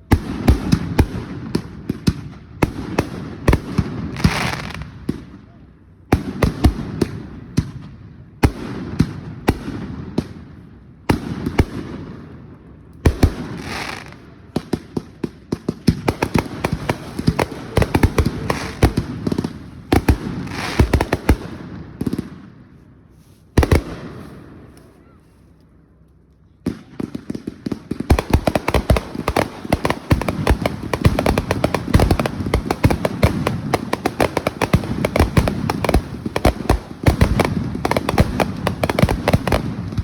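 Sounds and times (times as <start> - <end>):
fireworks bangs: 0.0 - 5.4, 13.0 - 22.6, 23.5 - 24.9, 26.6 - 40.0.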